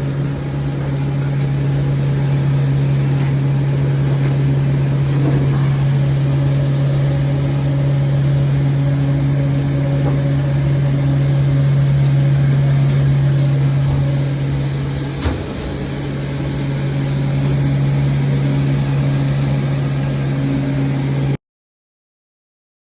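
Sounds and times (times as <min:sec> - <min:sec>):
motor humming: 0:00.0 - 0:21.4.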